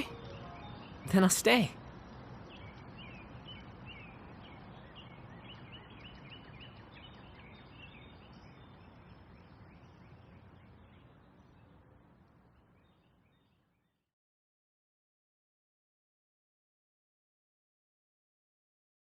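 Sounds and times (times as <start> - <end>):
steady background hiss: 0.0 - 13.7
small birds chirping: 0.0 - 14.0.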